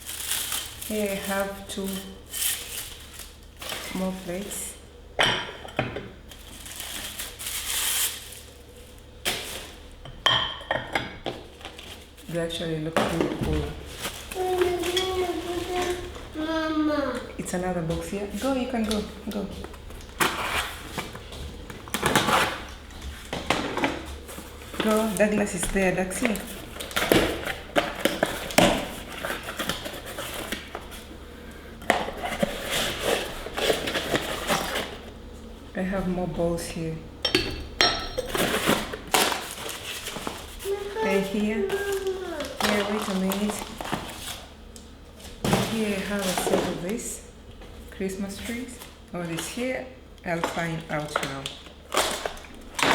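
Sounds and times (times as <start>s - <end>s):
packaging crinkling and rustling: 0.0s - 4.6s, 6.3s - 10.0s, 11.4s - 16.4s, 18.2s - 31.2s, 31.8s - 35.2s, 38.3s - 47.1s, 50.5s - 52.9s.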